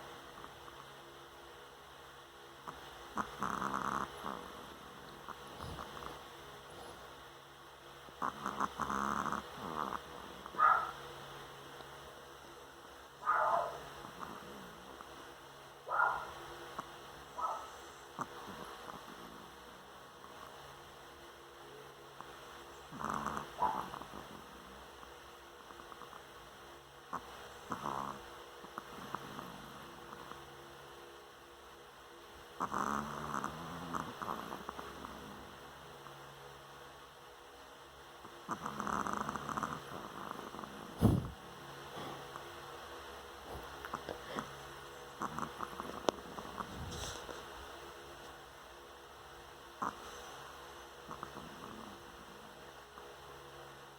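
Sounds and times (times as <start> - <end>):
faint steady hum: 0.0 - 53.9
long fluttering snore: 2.6 - 7.2, 8.2 - 10.6, 22.8 - 24.9, 27.1 - 30.3, 32.6 - 35.6, 38.4 - 42.4, 43.4 - 47.9, 49.7 - 50.4, 51.0 - 52.6
faint breath: 41.0 - 42.4, 43.5 - 44.8, 49.9 - 50.7.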